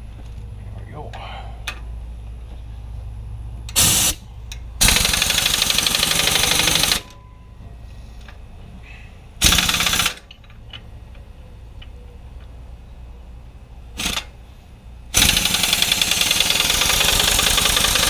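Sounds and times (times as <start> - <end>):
impact wrench hammering: 15.1 - 18.0.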